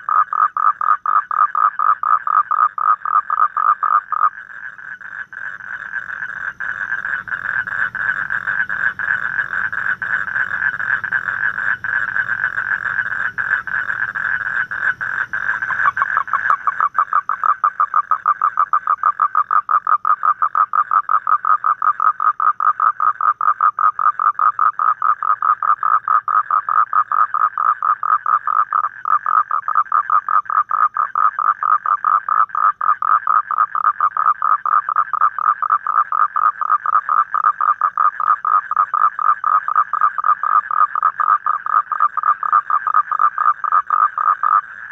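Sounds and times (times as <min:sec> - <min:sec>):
toad trilling: 0:00.0 - 0:44.9
low hum: 0:04.8 - 0:17.4.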